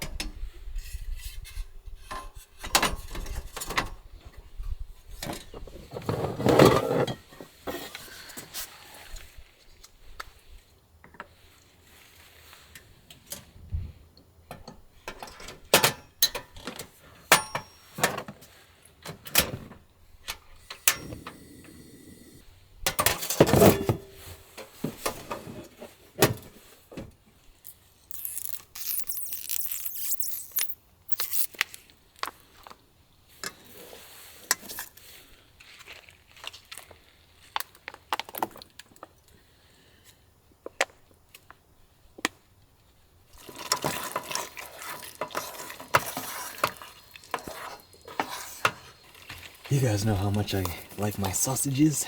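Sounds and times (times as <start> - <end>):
rustling or scraping: 27.5 - 31.6.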